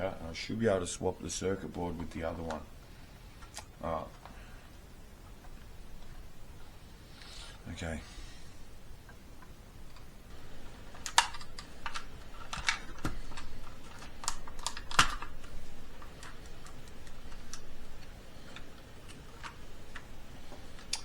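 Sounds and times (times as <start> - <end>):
plastic clicking and tapping: 9.1 - 21.0.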